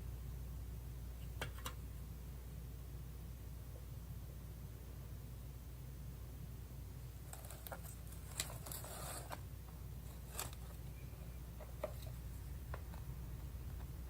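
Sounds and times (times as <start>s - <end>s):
low steady hum: 0.0s - 14.0s
metal soil blocker scraping: 7.3s - 9.4s.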